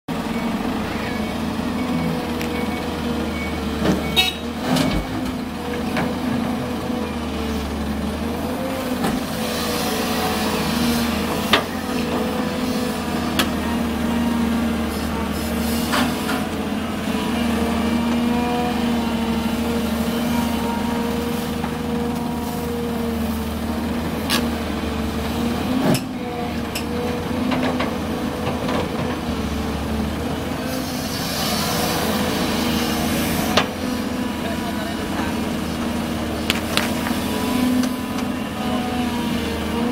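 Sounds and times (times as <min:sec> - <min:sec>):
excavator diesel engine running: 0:00.1 - 0:39.9
hiss: 0:30.7 - 0:32.4.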